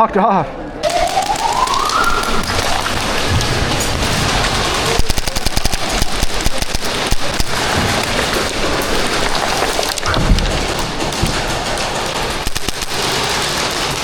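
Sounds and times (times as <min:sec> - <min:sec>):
airsoft guns firing full-auto: 0:00.8 - 0:14.0
pellet impacts pattering: 0:00.8 - 0:14.0.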